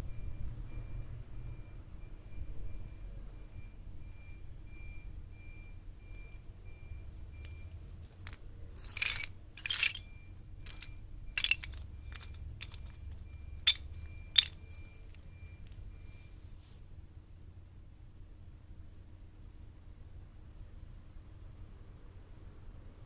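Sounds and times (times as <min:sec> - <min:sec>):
wood fire crackling: 0:08.0 - 0:15.8.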